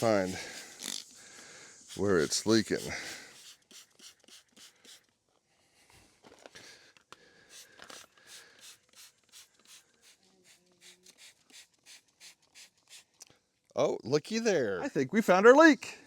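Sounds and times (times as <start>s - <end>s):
spray bottle squirts: 0.0s - 1.2s, 1.8s - 5.1s, 7.5s - 13.2s.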